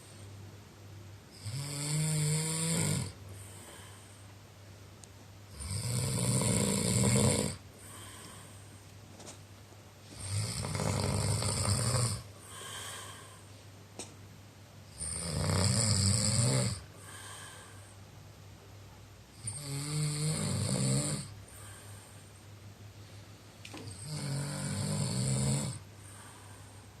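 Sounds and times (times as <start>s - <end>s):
person snoring: 1.3s - 4.0s, 5.5s - 8.5s, 10.1s - 13.4s, 14.9s - 17.8s, 19.4s - 22.0s, 23.8s - 26.7s.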